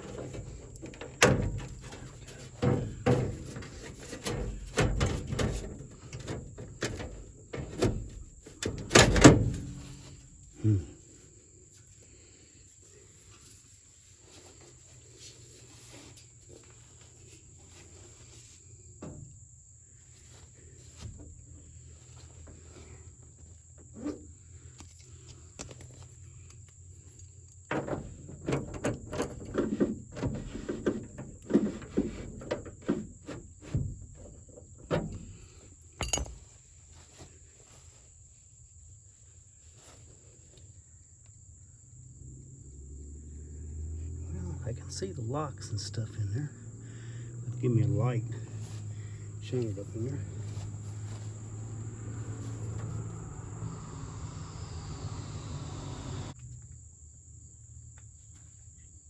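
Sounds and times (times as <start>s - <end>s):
metal parts and tools rattling: 36.0s - 36.5s.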